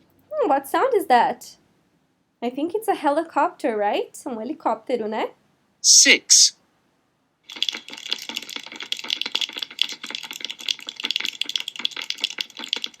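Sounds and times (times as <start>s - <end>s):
rain patter: 7.6s - 13.0s.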